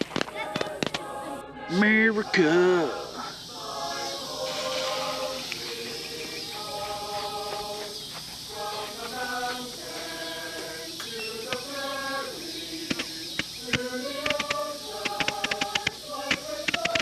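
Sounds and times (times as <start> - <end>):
firecrackers popping: 0.0 - 2.2, 9.6 - 17.0
music with sung melody: 0.0 - 17.0.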